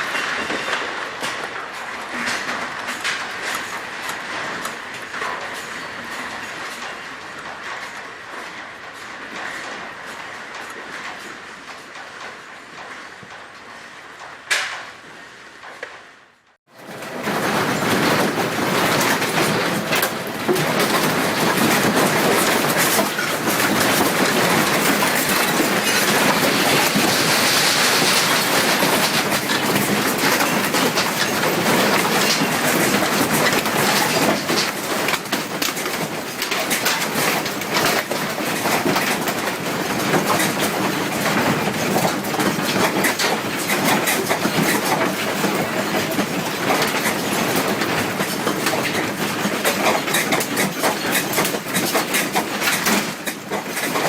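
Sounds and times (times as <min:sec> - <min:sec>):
objects rattling and clattering: 0:16.7 - 0:54.0.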